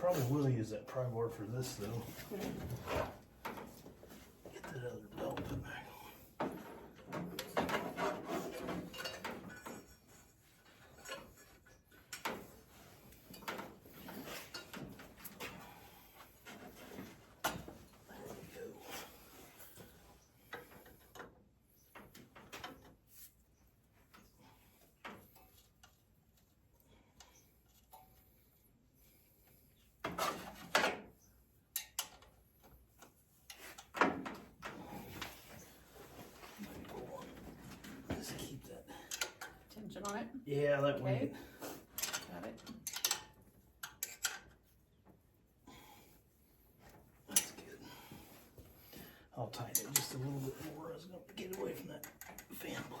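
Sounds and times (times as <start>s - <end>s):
metal tools scraping and clunking: 0.0s - 21.3s, 30.0s - 45.0s, 45.8s - 53.0s
rubber belt rubbing and scraping: 7.3s - 9.2s.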